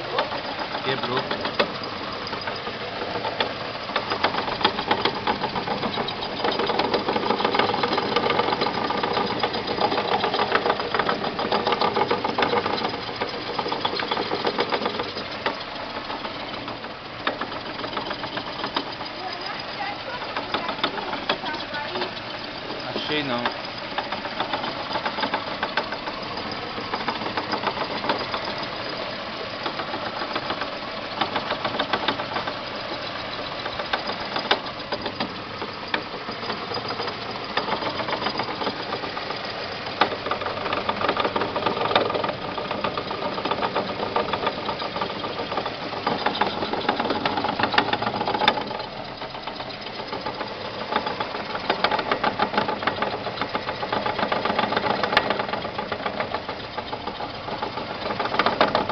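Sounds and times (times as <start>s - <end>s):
car engine knocking clatter: 0.0s - 58.9s.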